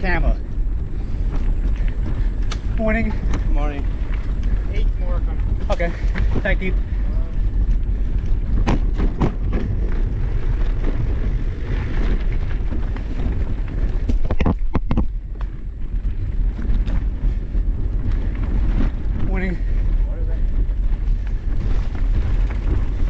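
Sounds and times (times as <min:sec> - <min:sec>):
bike knocks and rattles: 0:00.0 - 0:23.0
bike tyre noise: 0:00.0 - 0:23.0
wind on microphone: 0:00.0 - 0:23.0.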